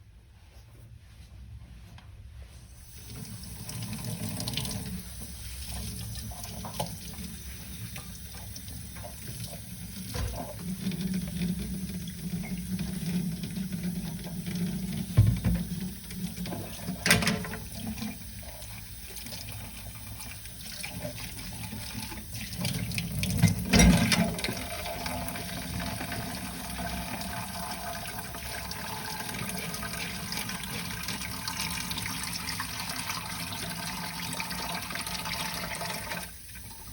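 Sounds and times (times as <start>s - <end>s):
dishes washed by hand: 3.0s - 36.9s
tap running into sink: 5.7s - 18.2s, 22.6s - 32.3s
dishes knocking against sink: 15.2s - 15.7s.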